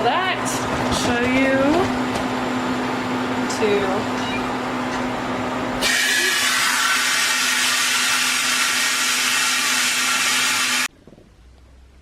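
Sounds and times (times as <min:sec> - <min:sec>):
machine low hum: 0:00.0 - 0:06.4
air hissing into vacuum chamber: 0:05.8 - 0:10.9.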